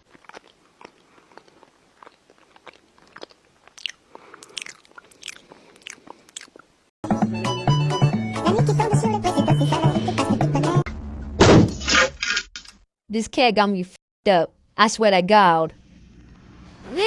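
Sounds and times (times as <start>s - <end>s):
cat chewing and crunching: 0.0s - 6.6s
music: 7.0s - 10.9s.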